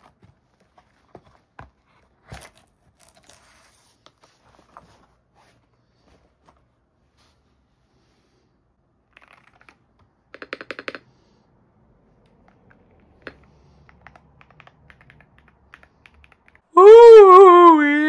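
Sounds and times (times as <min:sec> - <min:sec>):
mechanical keyboard keystrokes: 0:13.9 - 0:16.6.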